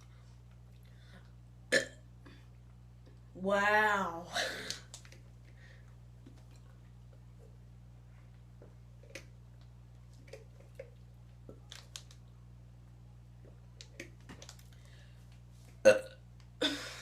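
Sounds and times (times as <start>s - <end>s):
breathing: 0.0s - 1.3s, 5.5s - 5.9s, 14.7s - 15.3s
person burping: 1.7s - 2.0s, 15.8s - 17.0s.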